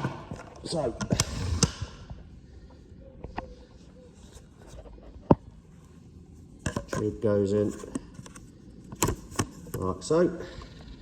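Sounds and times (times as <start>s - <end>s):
handling knocks and clicks: 6.6s - 9.9s.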